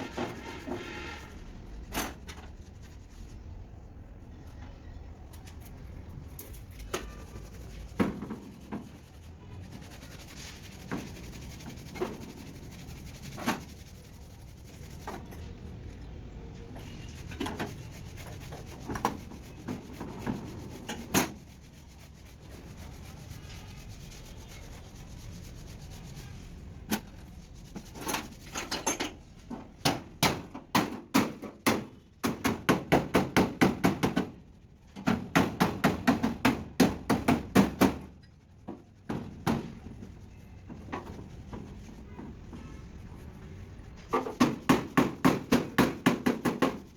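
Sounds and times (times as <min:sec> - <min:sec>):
hammer on sheet metal: 0:29.8 - 0:34.4, 0:35.0 - 0:38.1, 0:44.2 - 0:46.9.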